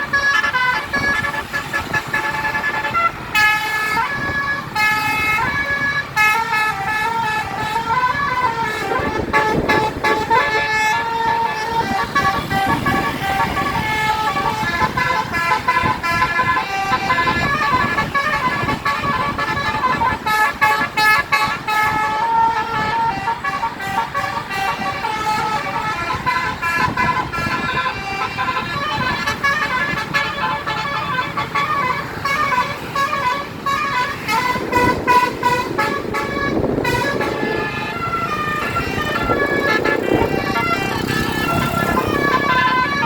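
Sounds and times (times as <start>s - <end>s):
multi-tone bus air horn tune: 0.0s - 43.0s
road and engine noise: 0.0s - 43.0s.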